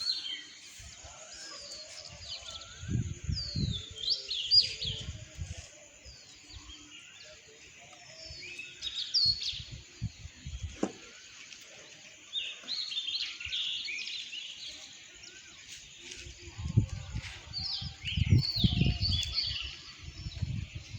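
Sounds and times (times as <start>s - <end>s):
sparrows chirping: 0.0s - 20.9s.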